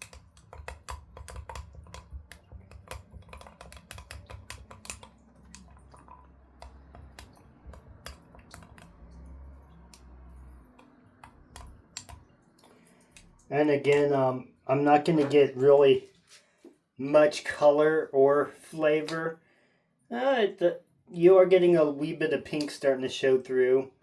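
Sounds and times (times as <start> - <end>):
light clicks and taps: 0.0 - 14.2
low hum: 4.4 - 14.0.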